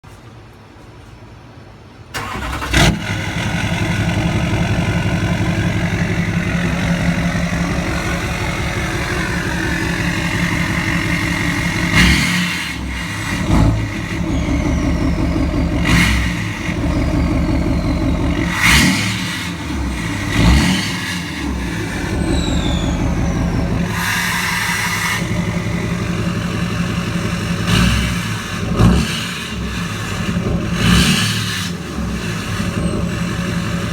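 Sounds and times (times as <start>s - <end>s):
diesel truck engine revving: 2.2s - 33.9s
turbo whistle spooling down: 13.6s - 19.4s, 20.6s - 25.5s.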